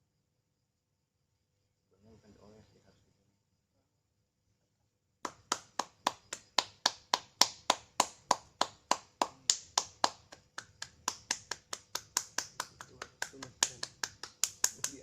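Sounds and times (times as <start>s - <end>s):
rhythmic hand slaps: 5.2s - 15.0s.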